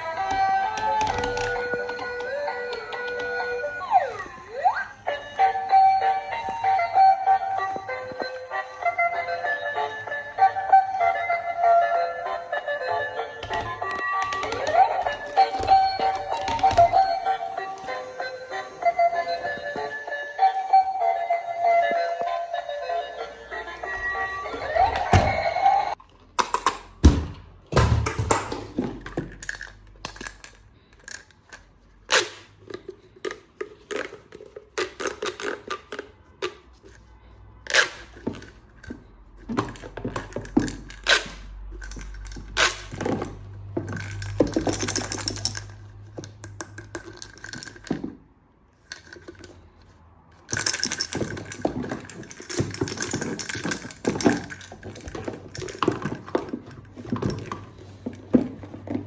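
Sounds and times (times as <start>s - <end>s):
plastic parts clicking and rustling: 0.0s - 3.7s, 13.4s - 18.0s, 27.8s - 59.0s.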